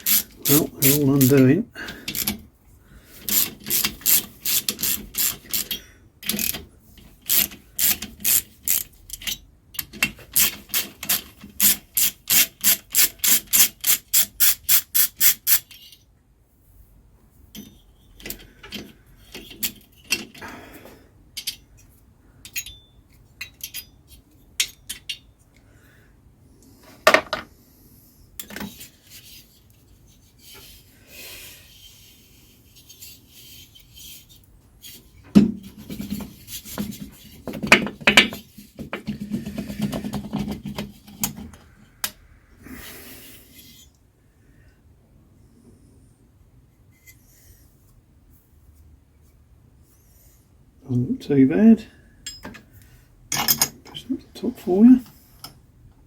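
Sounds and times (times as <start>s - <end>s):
ratchet spanner clicking: 0.0s - 1.4s, 2.1s - 2.4s, 3.2s - 6.6s, 7.3s - 15.8s.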